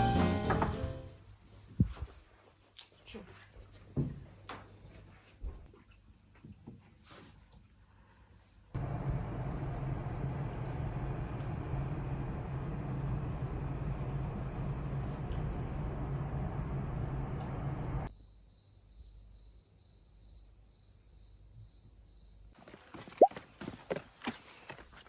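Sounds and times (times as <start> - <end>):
crickets chirping: 5.6 - 23.8
background hiss: 8.2 - 18.1
low hum: 8.8 - 18.1.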